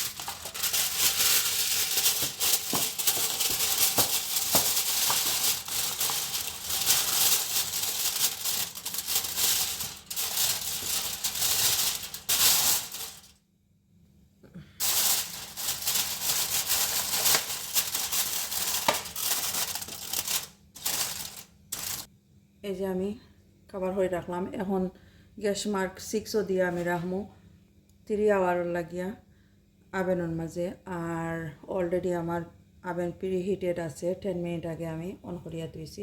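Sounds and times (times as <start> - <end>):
kitchen foil crinkling: 0.0 - 13.4, 14.8 - 22.1.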